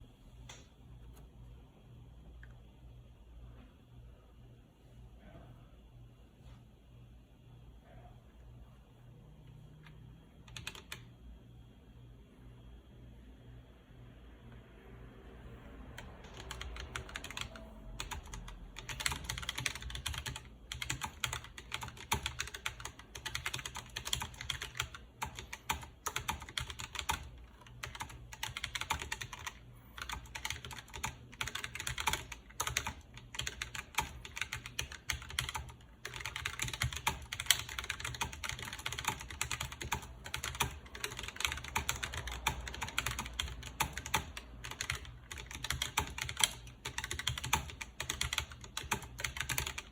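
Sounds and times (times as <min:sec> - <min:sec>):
mechanical keyboard typing: 0:10.4 - 0:11.1, 0:16.0 - 0:49.9.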